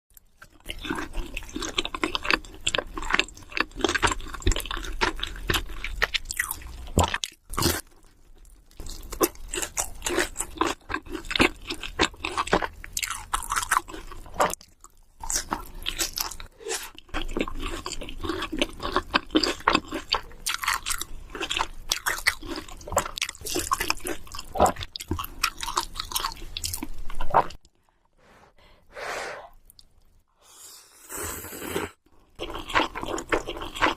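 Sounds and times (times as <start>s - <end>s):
crunching crispy fried chicken: 0.4s - 27.6s, 32.3s - 33.9s
slurping noodles: 30.4s - 32.0s.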